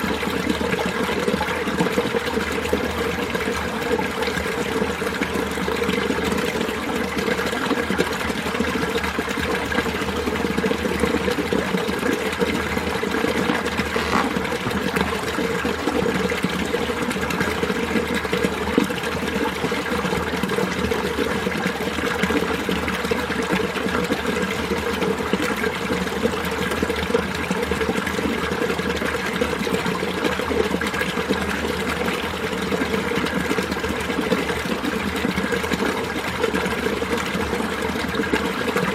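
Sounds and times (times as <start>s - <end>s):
stream flowing over rocks: 0.0s - 38.9s.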